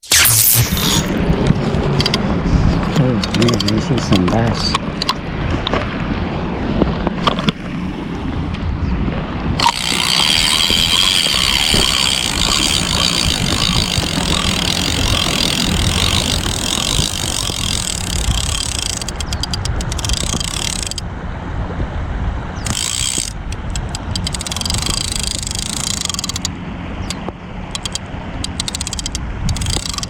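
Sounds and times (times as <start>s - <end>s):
wind rumbling on microphone: 0.7s - 30.0s
fast mechanical ticking: 1.5s - 2.2s, 2.9s - 5.2s, 9.6s - 21.0s, 22.6s - 30.0s.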